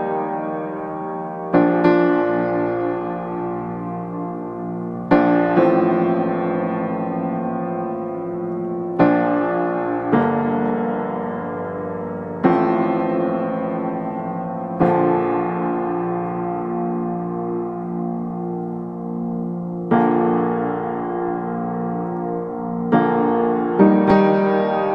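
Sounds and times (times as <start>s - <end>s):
slow piano chords: 0.0s - 24.9s.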